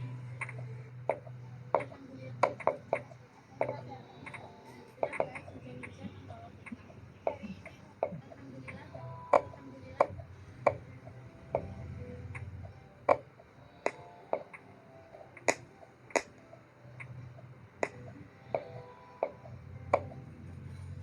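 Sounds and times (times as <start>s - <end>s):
faint low hum: 0.0s - 21.0s
sharp clicks and knocks: 17.8s - 20.3s.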